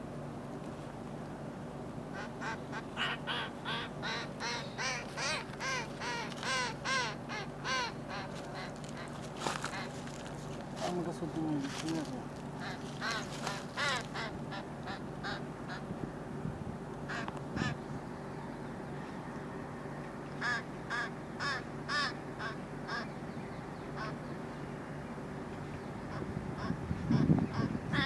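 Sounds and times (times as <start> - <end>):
steady low hum: 0.0 - 28.0
bird giving short calls: 2.1 - 10.1, 12.0 - 15.9.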